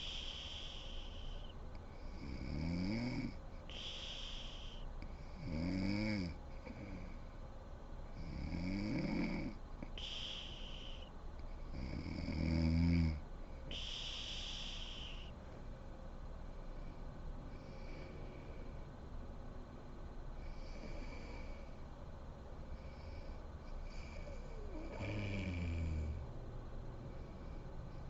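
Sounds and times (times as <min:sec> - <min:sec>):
woman snoring: 0:00.0 - 0:07.1, 0:08.2 - 0:11.1, 0:11.7 - 0:15.3, 0:23.9 - 0:26.2
breathy hiss: 0:00.0 - 0:07.4, 0:08.0 - 0:15.6, 0:16.4 - 0:19.0, 0:20.4 - 0:26.3.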